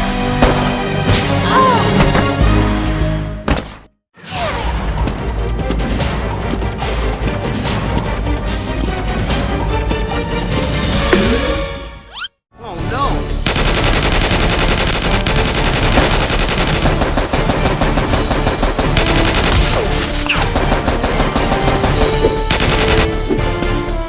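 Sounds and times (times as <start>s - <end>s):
background music: 0.0s - 3.7s, 4.3s - 24.0s
rapid automatic gunfire: 13.4s - 23.2s.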